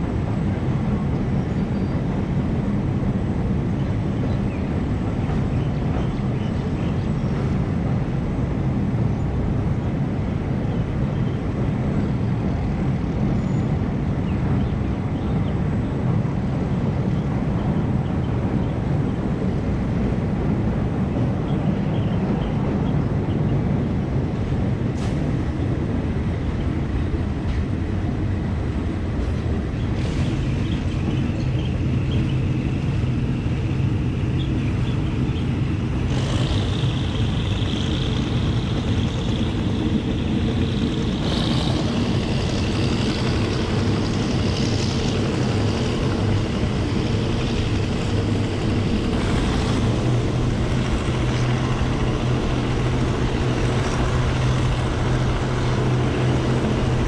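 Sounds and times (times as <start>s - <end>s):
train rumbling: 0.0s - 57.0s
high whine: 30.0s - 57.0s.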